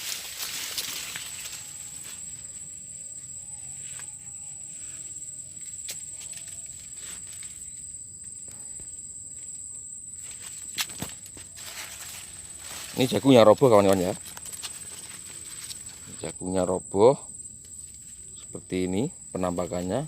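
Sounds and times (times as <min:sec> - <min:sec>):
footsteps rustling dry leaves: 0:00.0 - 0:02.8, 0:04.8 - 0:07.8, 0:10.2 - 0:16.4
insect trill: 0:00.0 - 0:20.0.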